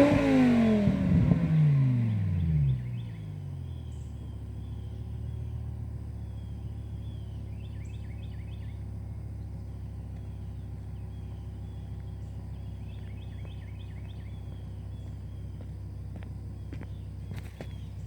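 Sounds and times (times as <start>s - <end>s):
car engine idling: 0.0s - 18.0s
bird chirping: 9.4s - 15.7s, 16.6s - 18.0s.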